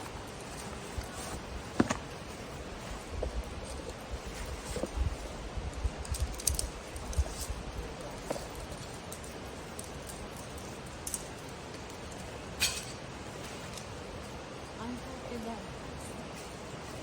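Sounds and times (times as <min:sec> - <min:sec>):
wind rumble on microphone: 0:00.0 - 0:08.8
metal climbing gear clinking: 0:00.0 - 0:14.7.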